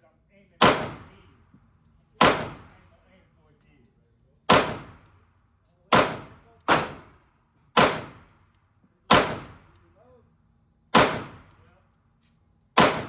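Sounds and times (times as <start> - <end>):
handgun shots: 0.6 - 1.2, 2.2 - 2.8, 4.5 - 5.1, 5.9 - 7.2, 7.8 - 8.3, 9.1 - 9.8, 11.0 - 11.6, 12.8 - 13.0.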